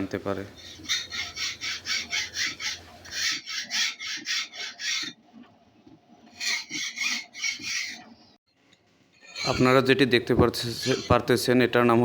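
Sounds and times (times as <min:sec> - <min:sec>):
hand file rasping on metal: 0:00.6 - 0:05.2, 0:06.4 - 0:08.1.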